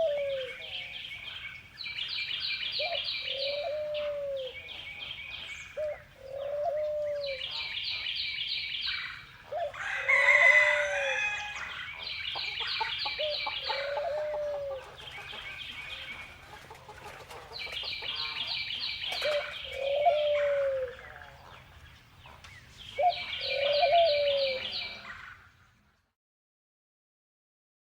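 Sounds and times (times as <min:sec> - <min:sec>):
low bird calls: 0:00.0 - 0:25.4
rooster crowing: 0:09.6 - 0:11.8.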